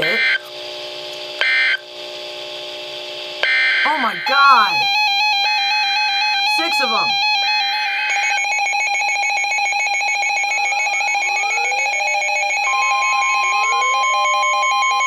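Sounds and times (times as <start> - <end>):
electronic weather alert alarms: 0.0 - 0.4, 3.4 - 15.0
steady alarm tone: 0.0 - 0.4, 1.4 - 1.8, 3.4 - 15.0.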